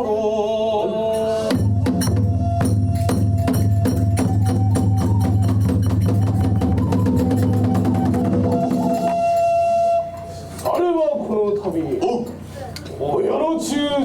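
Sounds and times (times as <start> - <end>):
drums and hand cymbals ensemble: 1.0 - 10.8.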